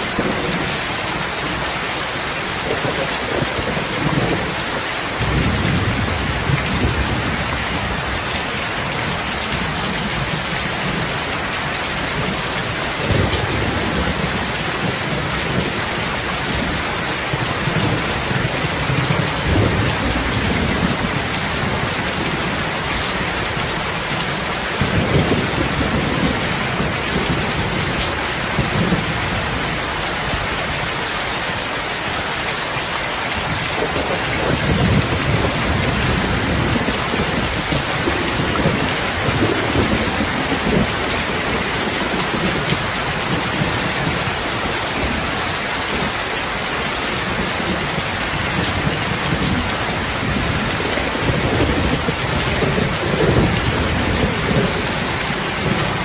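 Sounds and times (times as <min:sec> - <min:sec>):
thunder rumbling: 0:00.0 - 0:30.9, 0:33.3 - 0:56.0
heavy rain: 0:00.0 - 0:56.0.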